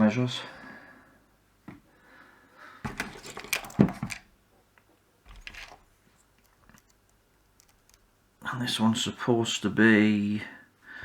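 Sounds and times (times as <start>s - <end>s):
small parts clicking and knocking: 2.9s - 8.2s.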